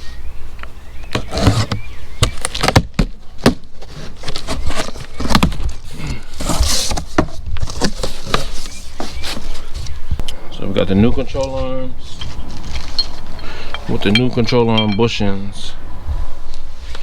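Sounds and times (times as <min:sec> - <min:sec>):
packaging rustling: 0:02.4 - 0:10.0
knocks and clatter of metal parts: 0:11.4 - 0:15.4.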